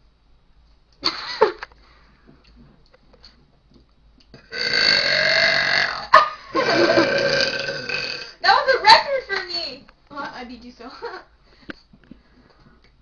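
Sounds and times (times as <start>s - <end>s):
girl burping: 4.4s - 8.4s.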